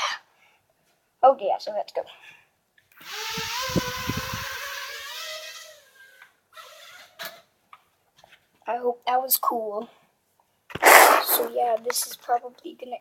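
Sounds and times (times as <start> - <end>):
toy drone propellers whining: 3.0 - 7.2.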